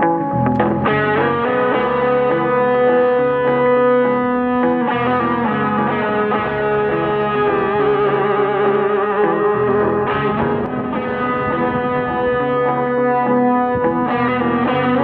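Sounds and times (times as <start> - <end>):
effects-processed electric guitar tones: 0.0 - 15.0.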